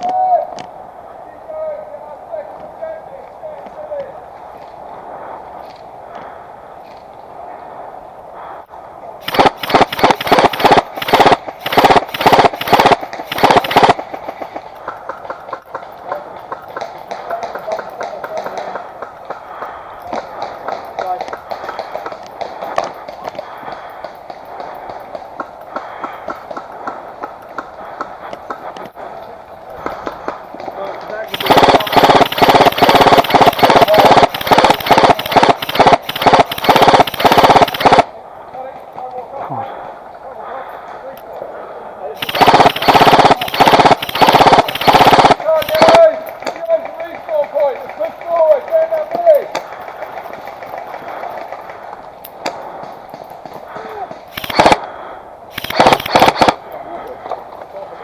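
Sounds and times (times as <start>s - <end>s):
airsoft gun firing on full auto: 9.2s - 19.4s, 31.3s - 38.1s, 42.2s - 52.0s, 52.8s - 54.9s, 55.5s - 56.6s
rapid clicking and rustling: 9.2s - 39.2s, 42.2s - 54.8s, 55.5s - 57.8s.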